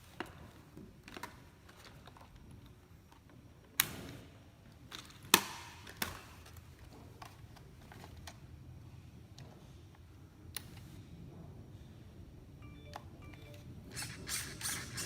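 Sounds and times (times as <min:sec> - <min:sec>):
low steady hum: 0:12.6 - 0:15.0.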